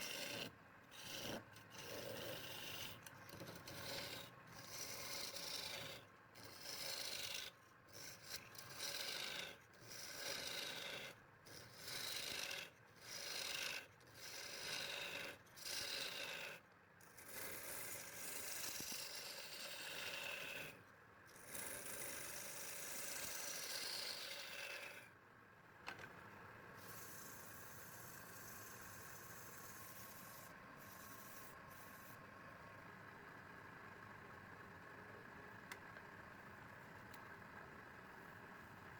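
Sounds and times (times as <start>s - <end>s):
wood rasping on a lathe: 0.0s - 16.6s, 17.3s - 20.8s, 21.4s - 25.1s, 26.8s - 32.1s.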